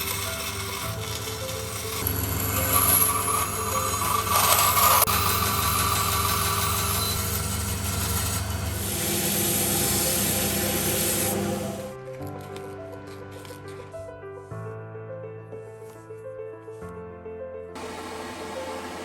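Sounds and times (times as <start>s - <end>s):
power tool motor running: 0.0s - 12.0s, 17.8s - 19.0s
cutting noise: 0.0s - 13.8s.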